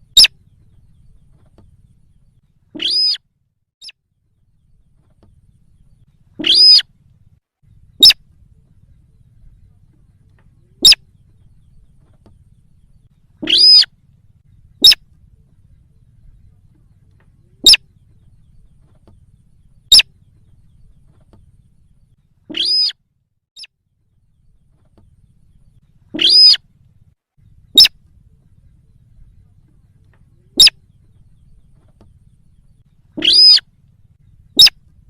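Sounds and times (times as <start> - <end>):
harsh pitched bird calls: 0.0 - 0.6, 2.7 - 3.2, 6.2 - 6.9, 7.8 - 8.2, 10.8 - 11.5, 13.3 - 14.0, 14.6 - 15.1, 17.5 - 18.7, 19.9 - 20.4, 22.4 - 23.0, 26.0 - 26.6, 27.4 - 28.0, 30.4 - 31.7, 32.6 - 33.7, 34.3 - 34.9
sharp click-like bird notes: 2.8 - 3.2, 13.4 - 13.9, 22.5 - 23.0, 26.2 - 26.6, 33.2 - 33.6.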